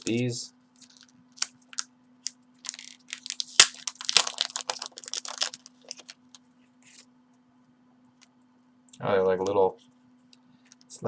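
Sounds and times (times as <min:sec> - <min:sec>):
packaging crinkling: 0:00.8 - 0:06.4.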